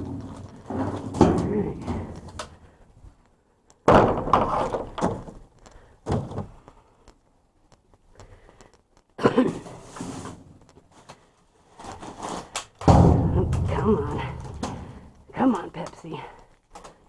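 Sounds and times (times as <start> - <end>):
cans thudding and scraping in dumpster: 0.0 - 2.5, 3.9 - 6.6, 11.8 - 15.1.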